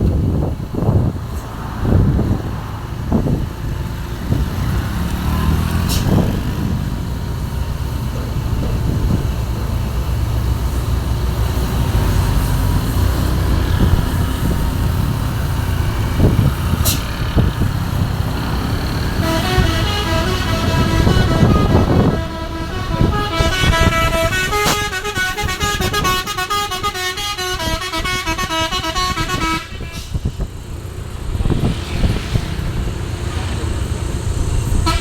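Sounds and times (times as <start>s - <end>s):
truck diesel engine rumbling: 0.0s - 35.0s
air brake hisses: 5.8s - 6.3s, 16.8s - 17.2s, 29.7s - 30.5s
multi-tone horn playing tune: 19.1s - 30.1s.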